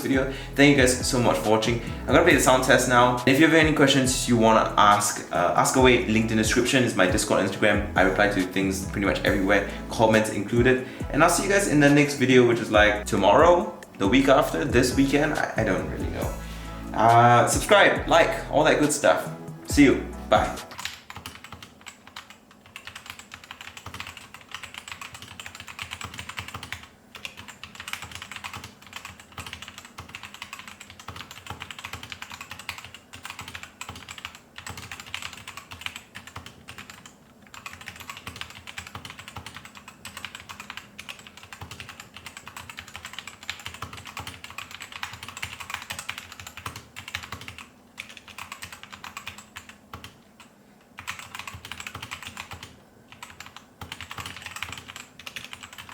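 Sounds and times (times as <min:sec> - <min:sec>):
mechanical keyboard typing: 0:20.5 - 0:50.2, 0:51.0 - 0:55.9.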